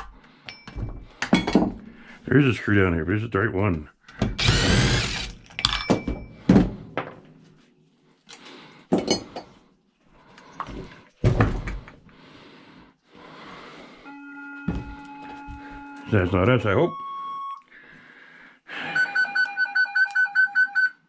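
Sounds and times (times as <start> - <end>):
metal parts rattling and clinking: 5.1 - 6.2.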